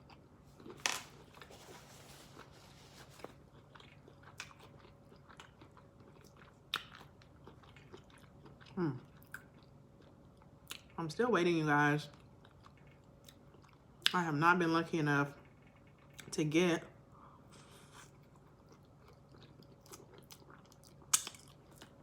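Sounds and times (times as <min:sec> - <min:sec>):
wet chewing mouth sounds: 0:03.2 - 0:11.0, 0:17.5 - 0:22.0.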